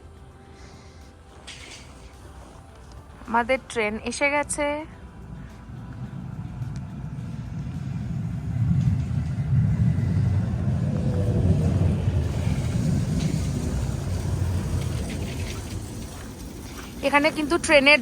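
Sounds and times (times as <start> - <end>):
light-rail train rumble: 0.0 - 18.0.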